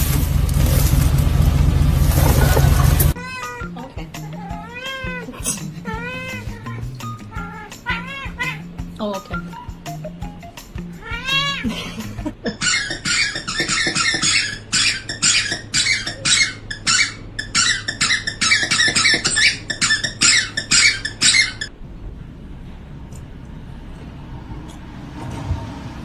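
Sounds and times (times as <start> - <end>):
high-pitched squeaking: 2.2 - 11.8, 12.4 - 21.8.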